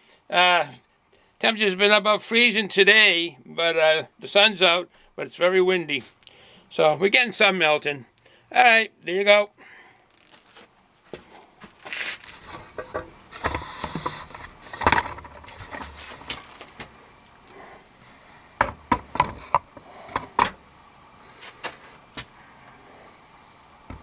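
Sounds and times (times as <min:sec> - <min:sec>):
rustling: 0:10.0 - 0:20.4
hard objects knocking and clicking: 0:12.4 - 0:16.9, 0:18.6 - 0:20.6.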